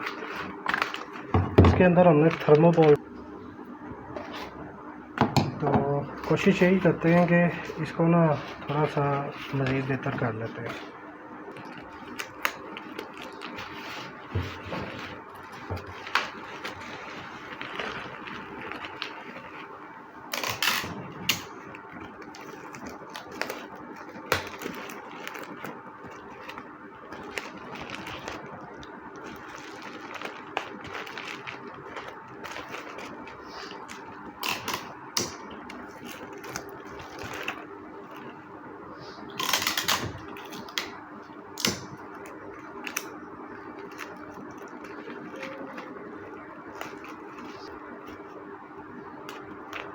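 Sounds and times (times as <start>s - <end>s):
steady low hum: 0.0s - 49.9s
cardboard and padding rustling: 13.1s - 19.7s.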